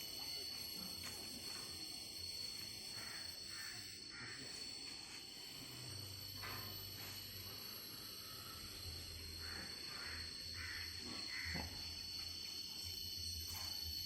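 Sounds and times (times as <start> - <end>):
insects chirring: 0.0 - 14.0
faint scattered calls: 2.8 - 5.5, 9.3 - 11.8.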